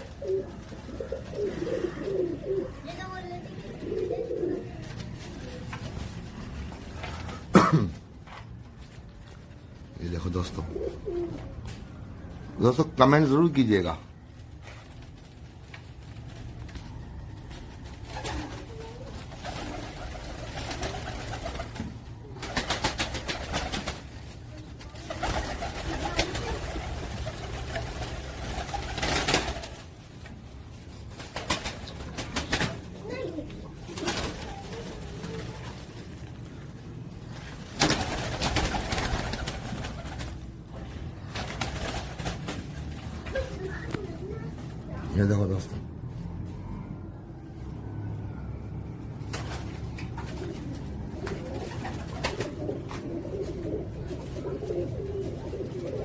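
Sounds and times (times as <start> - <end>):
pigeons cooing: 0.0 - 5.9, 10.4 - 12.1, 16.8 - 23.8, 24.8 - 29.8, 49.7 - 56.0
loud wing rustling: 14.3 - 43.6.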